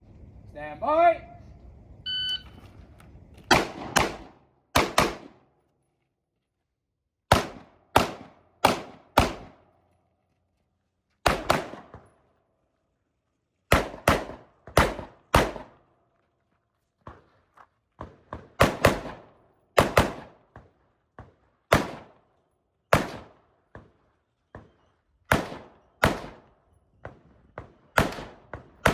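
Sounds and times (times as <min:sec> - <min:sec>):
rifle shots echoing: 0:03.5 - 0:05.5, 0:07.3 - 0:09.6, 0:11.2 - 0:12.0, 0:13.7 - 0:15.8, 0:18.5 - 0:20.4, 0:21.7 - 0:22.2, 0:22.9 - 0:23.4, 0:24.7 - 0:26.5, 0:27.6 - 0:28.9.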